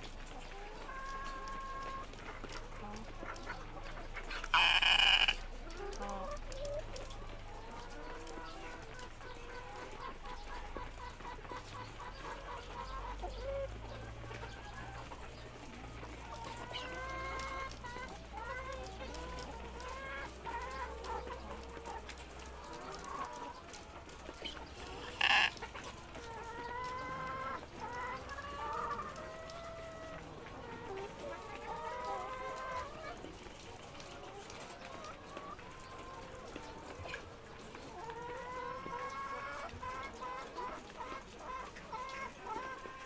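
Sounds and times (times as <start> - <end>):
chickens clucking: 0.0 - 43.0
loud harsh chicken sound: 4.3 - 5.5, 24.5 - 25.9.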